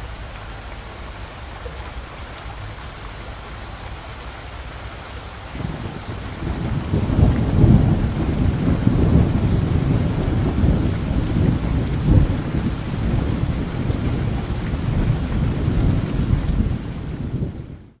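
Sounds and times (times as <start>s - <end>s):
steady rain: 0.0s - 18.0s
thunder rolling: 5.6s - 17.7s.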